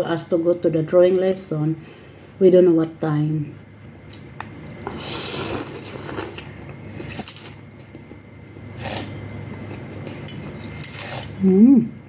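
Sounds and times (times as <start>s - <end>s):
slurping and chewing noodles: 4.9s - 8.1s.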